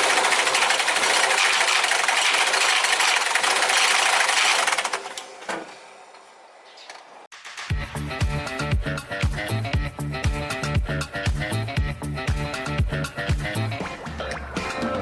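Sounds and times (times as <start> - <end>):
car engine clattering: 0.0 - 5.7.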